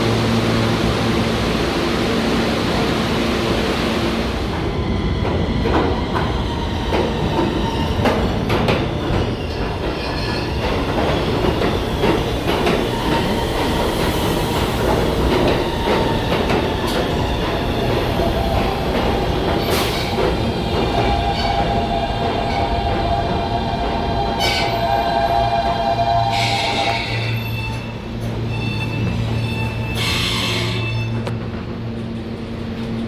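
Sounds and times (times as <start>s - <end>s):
subway train wheels clicking: 0.0s - 33.0s
train wheels squealing: 9.1s - 18.0s, 24.2s - 31.3s.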